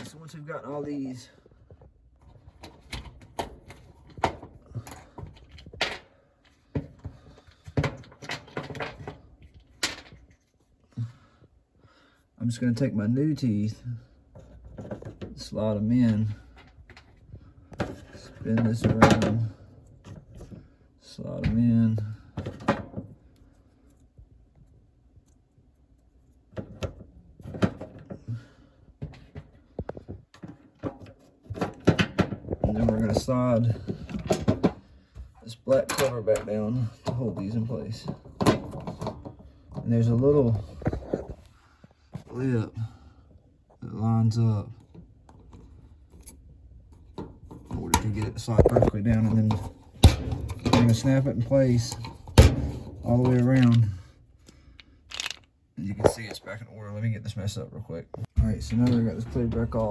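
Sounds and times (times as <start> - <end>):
hard plastic parts clicking: 51.8 - 55.6.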